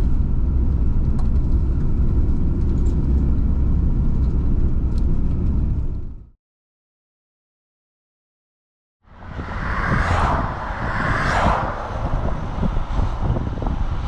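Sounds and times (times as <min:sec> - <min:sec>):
van engine and tyre rumble: 0:00.0 - 0:06.4, 0:09.1 - 0:14.0
wind hiss: 0:09.1 - 0:14.0.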